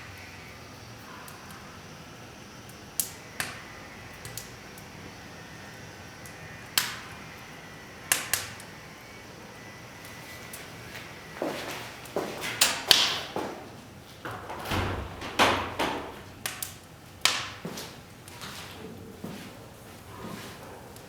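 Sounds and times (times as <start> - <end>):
wood fire hissing: 0.0 - 21.0
fire crackling pops: 2.6 - 5.0, 5.6 - 9.0, 12.0 - 13.4, 15.2 - 18.4.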